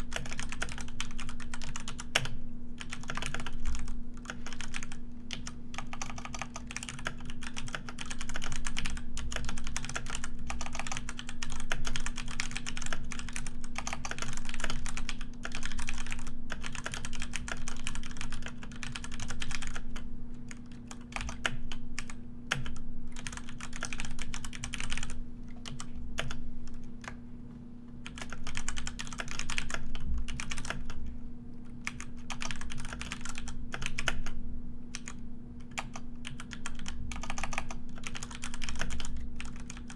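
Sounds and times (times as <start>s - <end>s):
keyboard typing: 0.0s - 27.2s, 28.0s - 31.0s, 31.8s - 39.9s
steady low hum: 0.0s - 39.9s.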